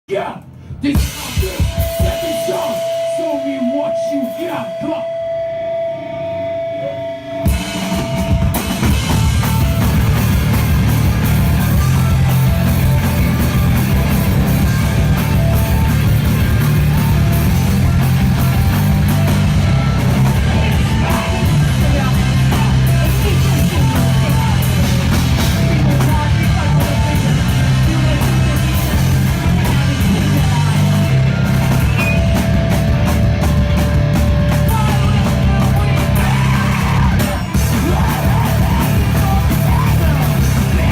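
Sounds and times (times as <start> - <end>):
live rock band playing: 0.4 - 40.9
single held tone: 2.0 - 8.5.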